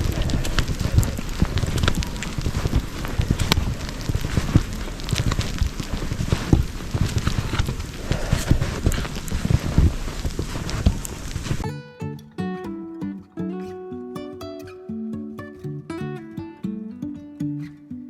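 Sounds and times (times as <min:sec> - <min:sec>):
sleet pellets ticking: 0:00.0 - 0:11.6
wind buffeting microphone: 0:00.0 - 0:11.6.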